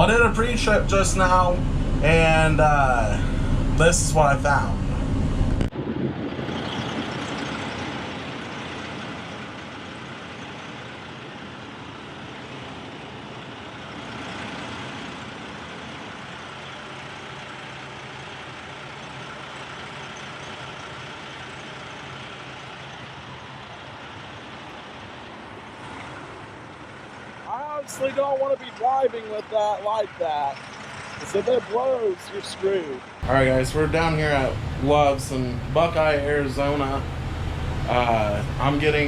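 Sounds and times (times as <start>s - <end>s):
diesel truck engine idling: 0.0s - 5.7s, 6.8s - 39.0s.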